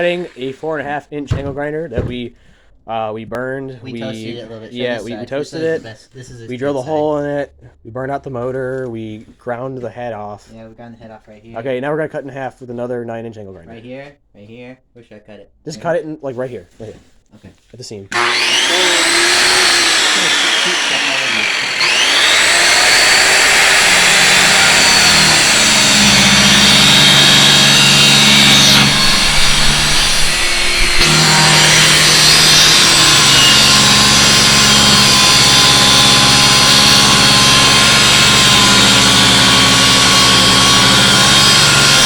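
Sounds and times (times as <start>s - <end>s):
angle grinder cutting metal: 18.1s - 42.0s.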